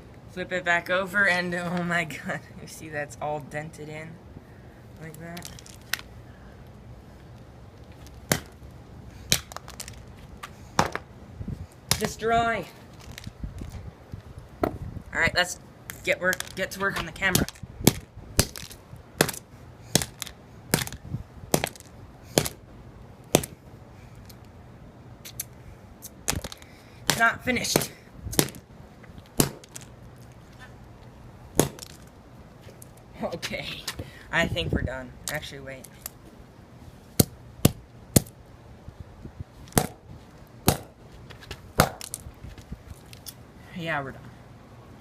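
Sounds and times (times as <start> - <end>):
sharp blows smashing phone: 17.4 - 22.6, 27.8 - 28.6.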